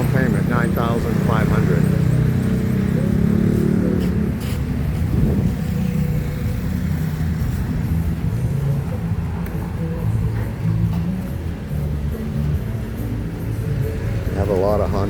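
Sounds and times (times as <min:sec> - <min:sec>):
street traffic drone: 0:00.0 - 0:15.0.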